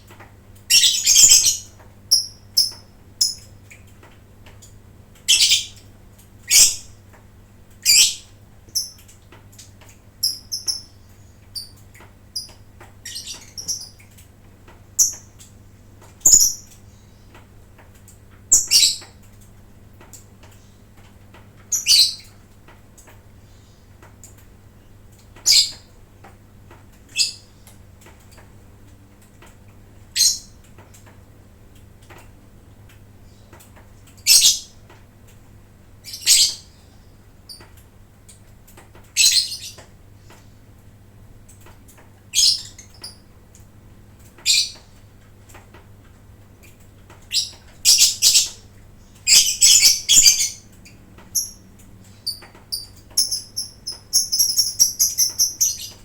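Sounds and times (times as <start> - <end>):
lovebirds giving shrill calls: 0.7 - 3.4, 5.3 - 5.7, 6.5 - 6.9, 16.2 - 16.7, 49.3 - 50.6, 51.4 - 51.6, 52.2 - 56.0.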